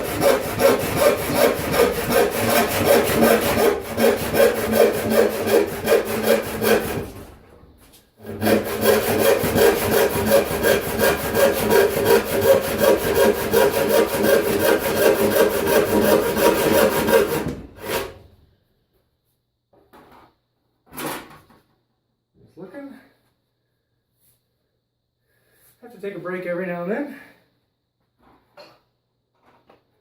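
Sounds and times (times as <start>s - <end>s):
hand saw cutting wood: 0.0s - 7.4s, 8.2s - 18.2s.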